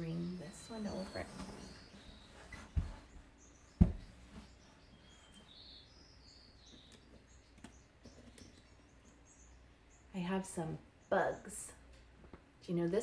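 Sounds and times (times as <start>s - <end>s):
small birds chirping: 0.0s - 13.0s
low thump: 3.8s - 4.1s.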